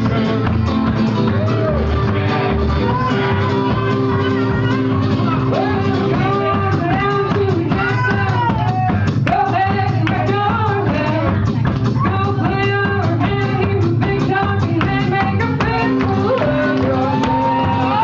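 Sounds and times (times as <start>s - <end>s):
guitar with bending sliding notes: 0.0s - 18.0s
live band music: 0.0s - 18.0s
low bass notes: 0.0s - 18.0s.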